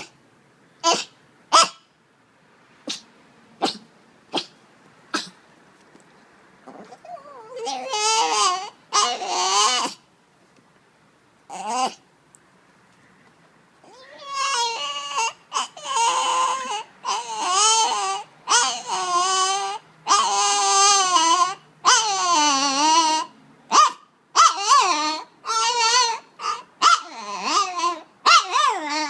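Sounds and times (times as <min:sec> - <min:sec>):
dog whining: 0:00.8 - 0:01.8, 0:06.6 - 0:10.0, 0:11.5 - 0:12.0, 0:13.8 - 0:29.0
dog yelping: 0:00.8 - 0:01.9, 0:06.7 - 0:10.0, 0:11.5 - 0:12.0, 0:13.8 - 0:29.0.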